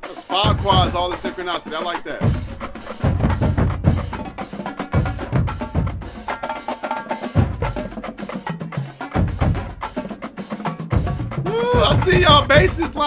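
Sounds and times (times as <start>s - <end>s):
snare and tenor drums: 0.0s - 13.0s
bass drum hits: 0.5s - 1.1s, 2.2s - 6.1s, 7.4s - 7.9s.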